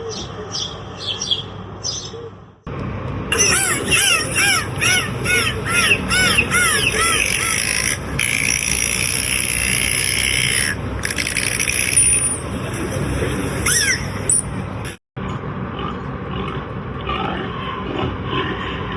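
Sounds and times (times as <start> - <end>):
long high animal call: 3.3 - 12.2, 13.6 - 14.4
animal calls rising and falling: 3.3 - 12.5, 13.6 - 14.6.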